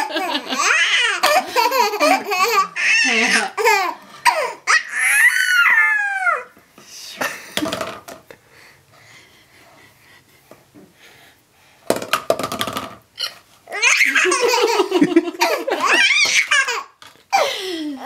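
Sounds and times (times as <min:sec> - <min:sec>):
baby laughing: 0:00.0 - 0:06.4, 0:13.2 - 0:17.5.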